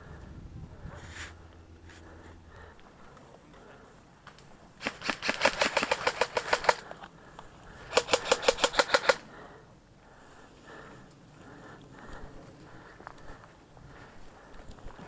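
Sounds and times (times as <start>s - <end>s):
airsoft gun full-auto bursts: 4.8s - 6.9s, 7.8s - 9.3s.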